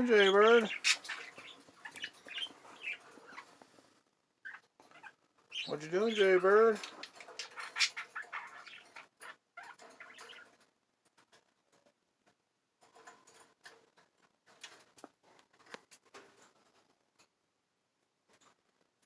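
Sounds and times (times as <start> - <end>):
budgie chatter: 0.0 - 3.0
small clicks and scratches: 6.8 - 17.4, 18.2 - 19.0.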